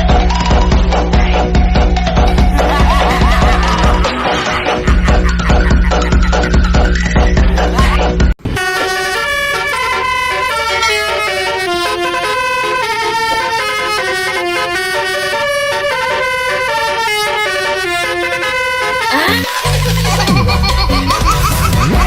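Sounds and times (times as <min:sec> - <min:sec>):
multi-tone bus air horn tune: 0:07.7 - 0:19.9.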